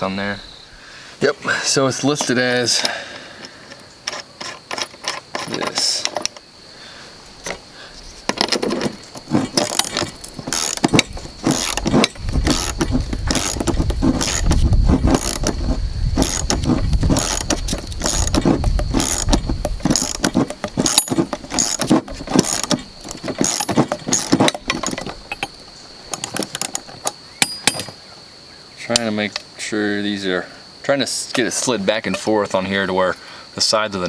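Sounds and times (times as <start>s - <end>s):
metal tools and bolts clinking: 2.1s - 6.4s, 8.3s - 15.5s, 16.2s - 28.0s, 31.3s - 32.8s.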